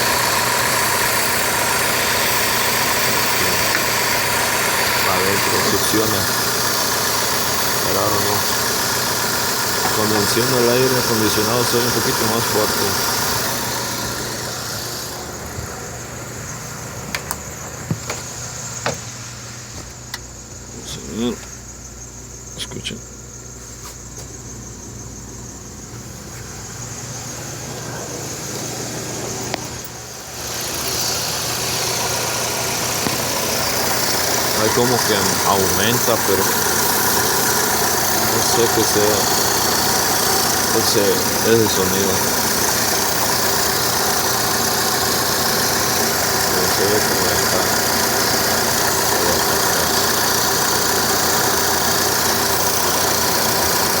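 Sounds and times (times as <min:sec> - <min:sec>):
hiss: 0:00.0 - 0:15.4, 0:26.4 - 0:54.0
car engine humming: 0:00.0 - 0:54.0
noise from engine bay: 0:00.0 - 0:54.0
click: 0:17.1 - 0:17.4.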